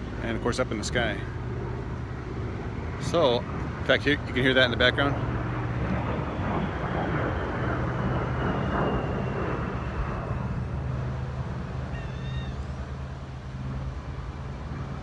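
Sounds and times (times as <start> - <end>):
distant jet aircraft rumble: 0.0 - 15.0
bird wavering call: 11.9 - 12.8.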